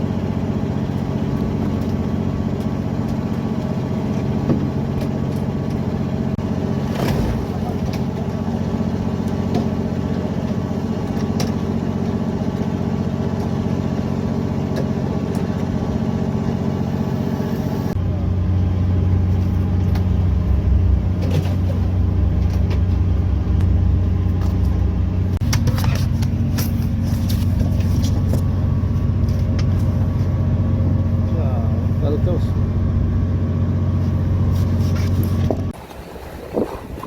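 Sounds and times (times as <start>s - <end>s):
boat engine droning: 0.0s - 37.0s.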